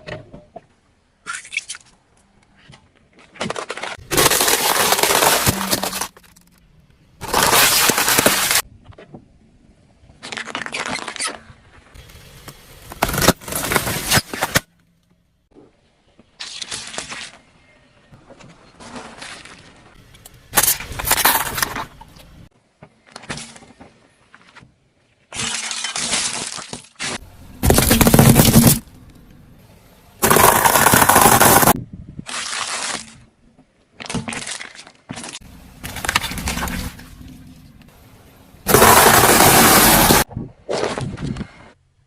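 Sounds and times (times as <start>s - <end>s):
objects crunching under car tyre: 3.2s - 6.6s, 7.2s - 8.7s, 10.2s - 14.7s, 25.6s - 29.4s, 30.2s - 33.3s, 34.0s - 41.2s.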